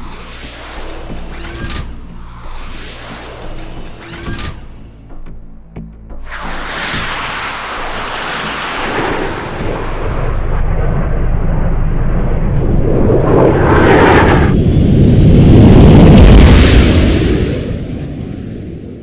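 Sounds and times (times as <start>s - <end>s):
jet aircraft roar: 0.0s - 5.0s, 6.2s - 19.0s
rushing sweep: 2.1s - 4.2s, 6.2s - 10.5s.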